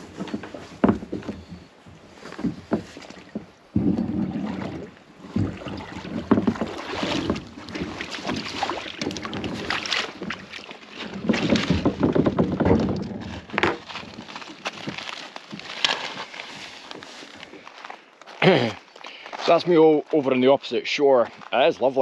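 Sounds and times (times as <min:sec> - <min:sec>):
paddle splashing water: 0:00.0 - 0:17.4
water against kayak hull: 0:00.0 - 0:17.9.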